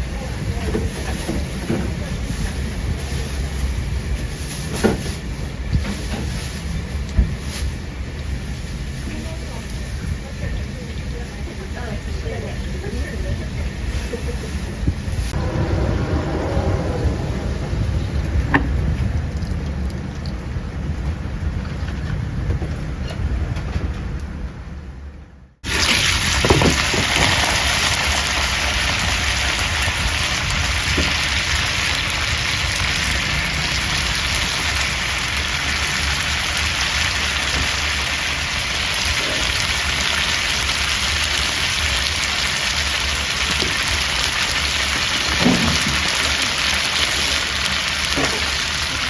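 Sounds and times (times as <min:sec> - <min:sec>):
dumplings sizzling in oil: 0:25.6 - 0:49.0.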